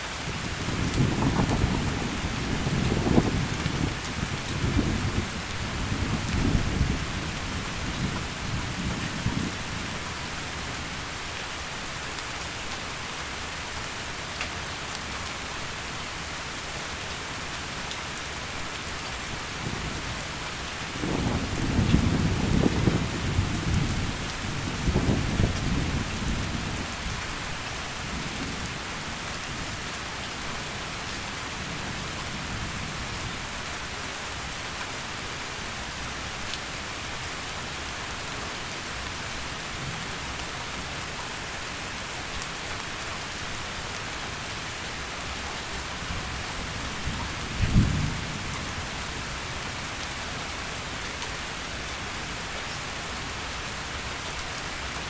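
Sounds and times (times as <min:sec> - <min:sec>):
heavy rain falling: 0:00.0 - 0:55.0
thunder rumbling: 0:21.0 - 0:26.6, 0:47.5 - 0:48.5.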